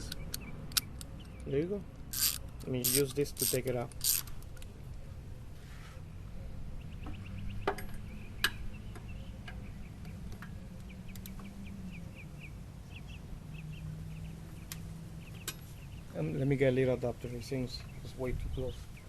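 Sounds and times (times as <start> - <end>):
socket wrench metallic clicks: 0.0 - 1.5, 2.1 - 4.4
bird chirping: 0.0 - 5.2, 6.1 - 19.0.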